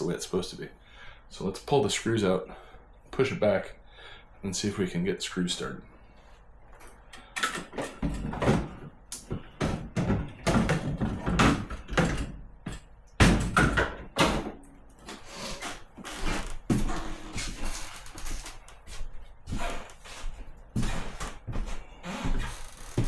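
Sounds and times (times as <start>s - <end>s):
knocks and clunks in freezer: 7.4s - 14.6s.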